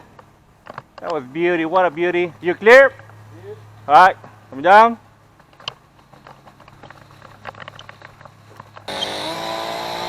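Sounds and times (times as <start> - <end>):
chainsaw running: 8.9 - 10.0.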